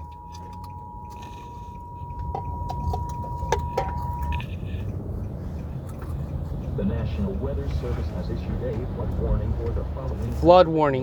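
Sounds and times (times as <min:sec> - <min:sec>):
two-tone alert signal on radio: 0:00.0 - 0:04.4
road rumble: 0:00.0 - 0:11.0.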